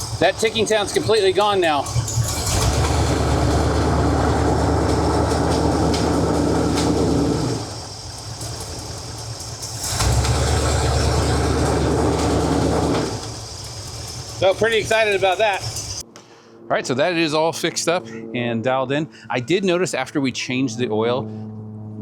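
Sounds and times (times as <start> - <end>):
starter cranking engine: 0.0 - 16.0.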